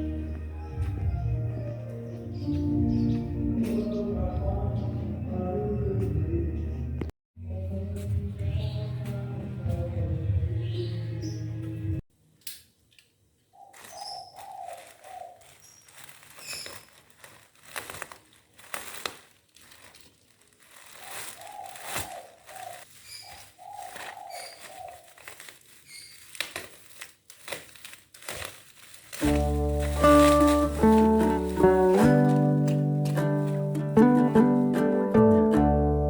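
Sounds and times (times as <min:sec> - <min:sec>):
crinkling and clicking handling: 0:12.4 - 0:33.8
bird calling: 0:13.5 - 0:17.1, 0:20.9 - 0:26.4.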